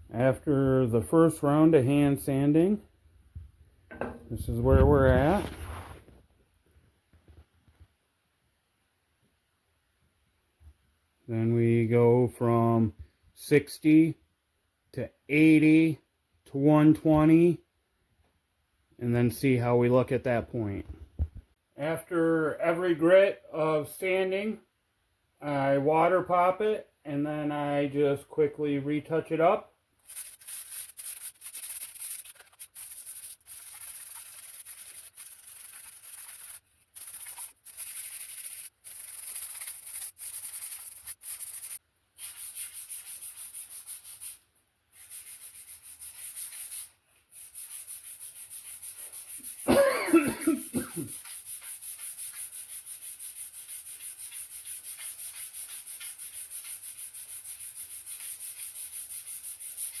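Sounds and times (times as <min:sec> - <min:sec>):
sandpaper rubbing on wood: 0:30.1 - 0:49.8, 0:50.4 - 1:00.0.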